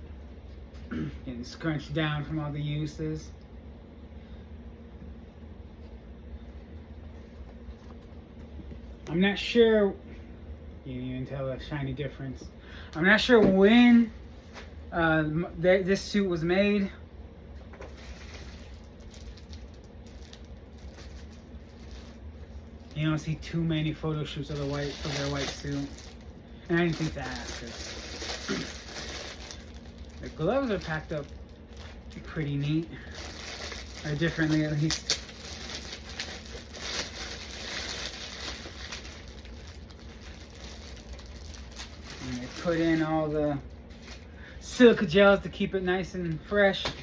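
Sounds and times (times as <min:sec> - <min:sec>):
steady low hum: 0:00.0 - 0:47.0
plastic packaging crinkling: 0:17.8 - 0:44.3.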